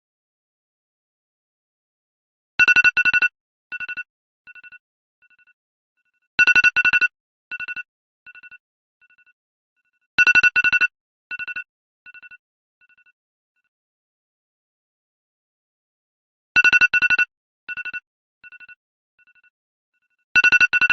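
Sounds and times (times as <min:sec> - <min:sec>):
phone alarm rapid beeps: 0:10.2 - 0:11.5, 0:20.4 - 0:20.9.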